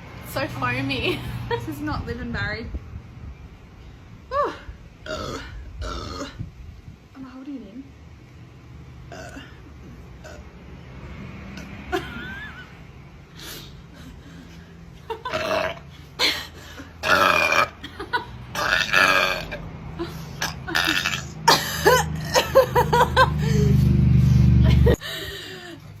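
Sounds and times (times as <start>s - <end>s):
woman burping: 4.3s - 6.5s, 9.1s - 10.4s, 15.2s - 16.4s, 17.0s - 19.6s, 20.4s - 22.7s.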